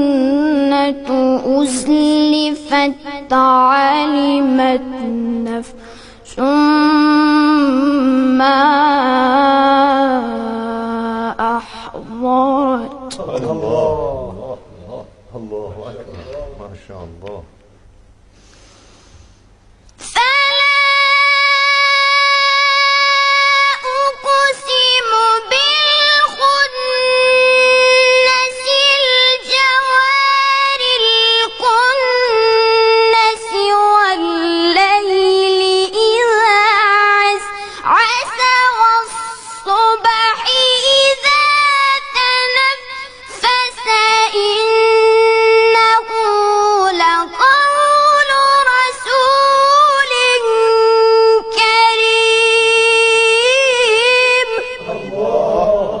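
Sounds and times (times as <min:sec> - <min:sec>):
person chanting melodically: 0:00.0 - 0:17.5, 0:37.0 - 0:56.0.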